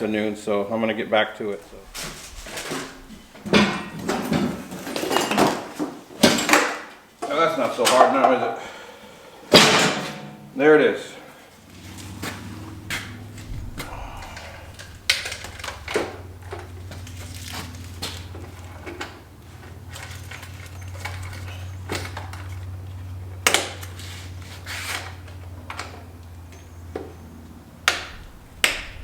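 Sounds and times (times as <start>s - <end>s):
steady low hum: 8.8s - 23.4s
metal parts clanking: 11.8s - 22.6s.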